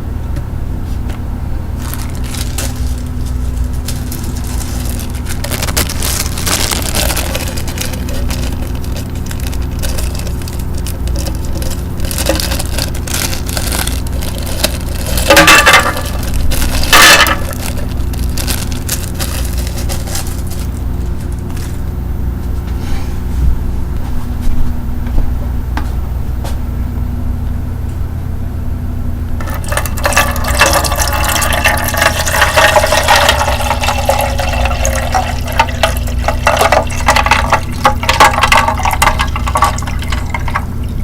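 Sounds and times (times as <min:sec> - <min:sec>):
bubble wrap crinkling and popping: 0:01.8 - 0:22.0, 0:29.4 - 0:40.7.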